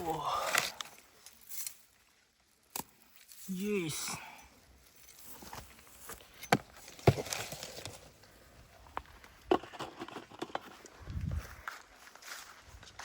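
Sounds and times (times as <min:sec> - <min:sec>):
twigs snapping: 0:00.3 - 0:03.4.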